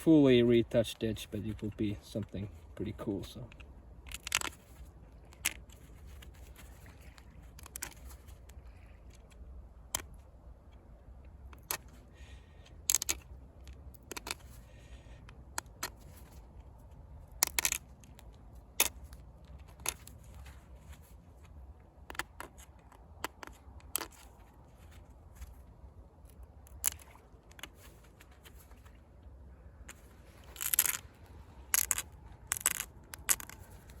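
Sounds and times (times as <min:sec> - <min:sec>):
antler scraping on stone: 0:29.8 - 0:34.0.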